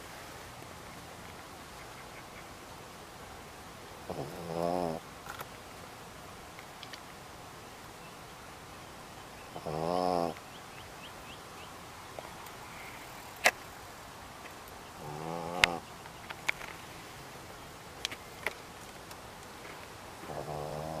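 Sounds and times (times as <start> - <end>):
dog snoring: 4.1 - 5.0, 9.6 - 10.4, 15.0 - 15.8, 20.2 - 21.0.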